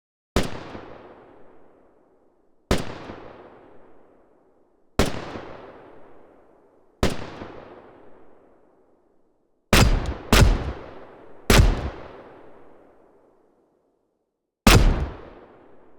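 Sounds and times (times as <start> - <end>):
echoing gunshots: 9.8 - 12.4, 14.7 - 15.6.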